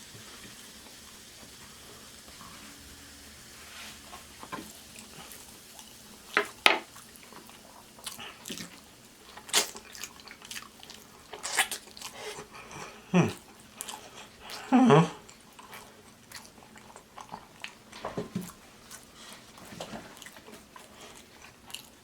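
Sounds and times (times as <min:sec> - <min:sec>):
wet mouth eating sounds: 0:07.2 - 0:22.0.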